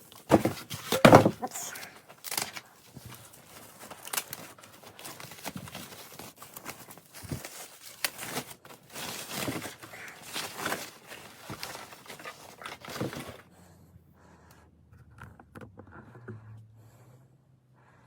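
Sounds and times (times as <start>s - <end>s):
packing material rustling: 0.0s - 13.4s.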